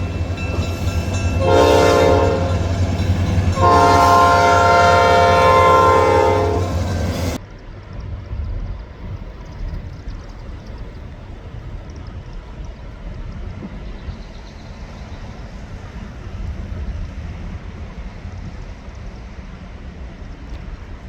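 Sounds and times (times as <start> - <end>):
vehicle rumbling: 2.2 - 21.0.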